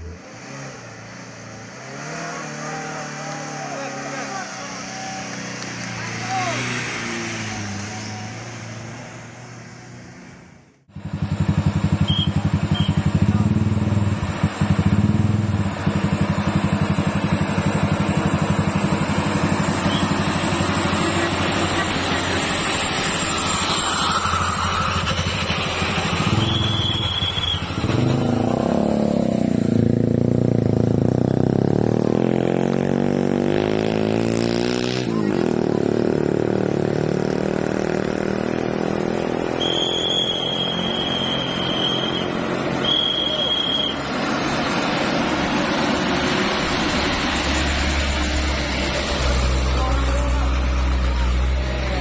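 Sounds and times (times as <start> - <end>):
vehicle engine running hard: 0.0 - 52.0.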